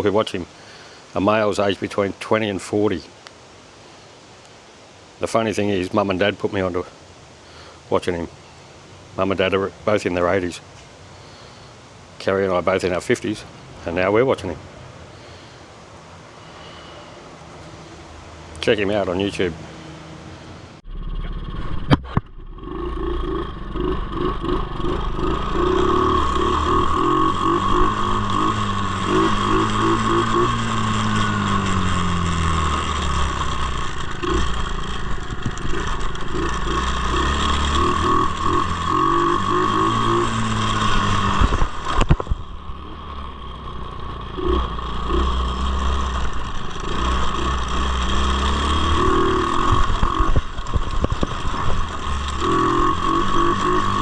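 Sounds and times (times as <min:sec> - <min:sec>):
high whine: 0:16.4 - 0:54.0
vehicle engine revving: 0:17.5 - 0:54.0.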